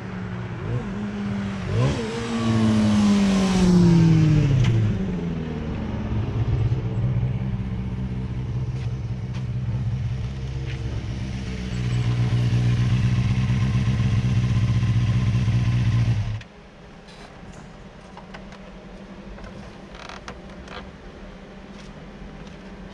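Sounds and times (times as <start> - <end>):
street background noise: 0.0 - 22.9
motorcycle engine running: 6.6 - 16.4.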